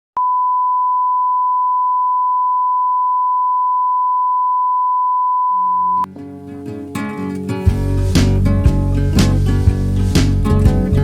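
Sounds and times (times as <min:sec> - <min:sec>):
high electronic beep tone: 0:00.2 - 0:06.1
quiet guitar music: 0:06.0 - 0:11.0.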